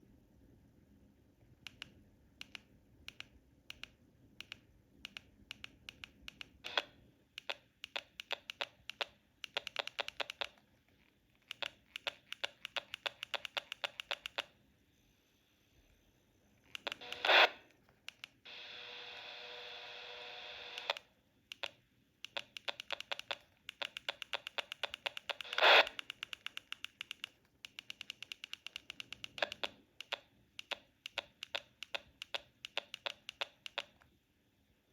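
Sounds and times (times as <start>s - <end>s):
radio speaker clicking: 4.4s - 14.5s, 16.7s - 18.4s, 20.6s - 34.1s.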